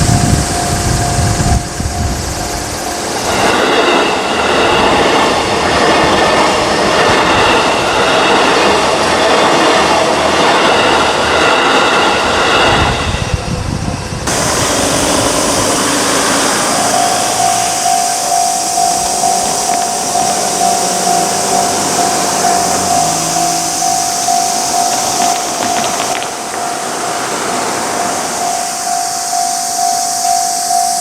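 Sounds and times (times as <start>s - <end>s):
electric train running: 0.0s - 31.0s
level crossing alarm tone: 14.3s - 31.0s.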